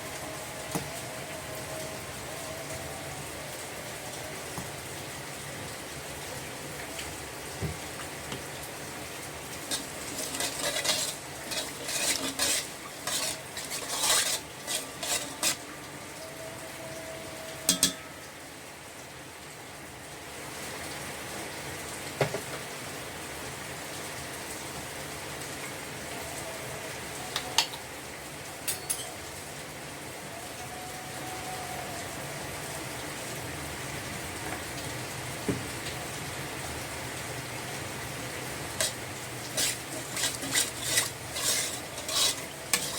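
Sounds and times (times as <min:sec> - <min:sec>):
frying sizzle: 0:00.0 - 0:42.9
utensil scraping a pan: 0:09.6 - 0:15.7, 0:38.8 - 0:42.9.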